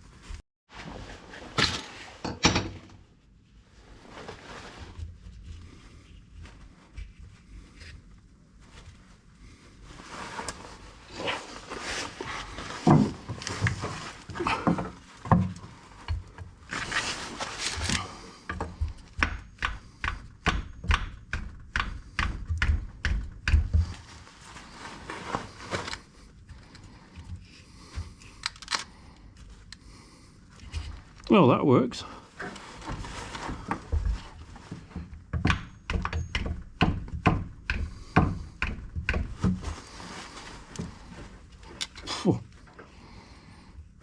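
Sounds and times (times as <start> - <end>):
tools scraping and knocking metal: 1.5 - 3.0, 34.8 - 39.3.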